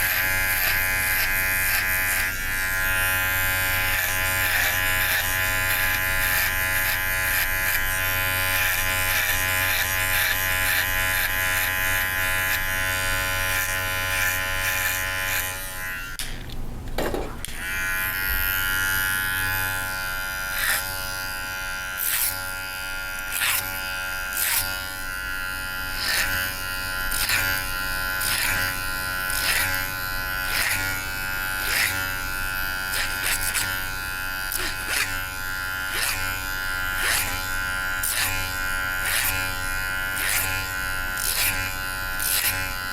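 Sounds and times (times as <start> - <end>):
electric hair clippers buzzing: 0.0 - 42.9
clipper strokes through hair: 20.5 - 21.3, 23.1 - 24.8, 31.6 - 39.5.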